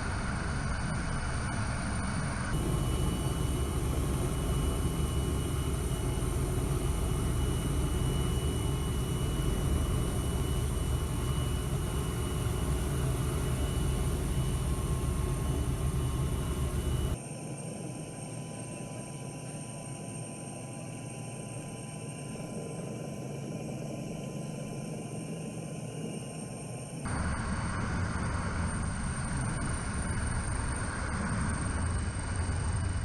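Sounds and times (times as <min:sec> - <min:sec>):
high whines: 0:02.5 - 0:17.2
low mechanical rumble: 0:02.5 - 0:17.2, 0:27.1 - 0:33.0.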